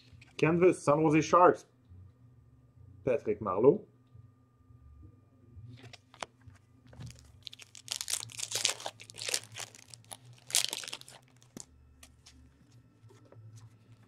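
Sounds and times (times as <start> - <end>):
foil wrapper tearing and crinkling: 7.0 - 12.2.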